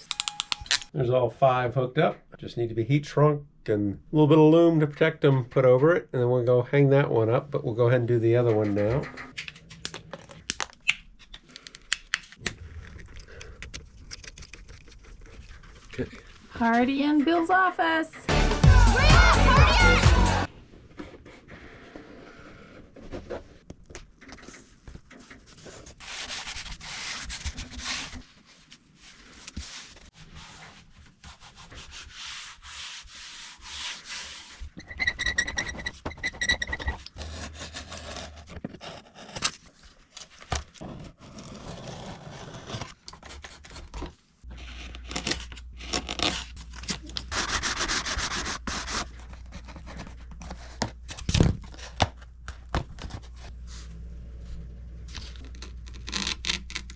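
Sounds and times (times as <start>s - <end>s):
rubbing and scraping by hand: 18.3s - 39.4s, 44.4s - 51.0s.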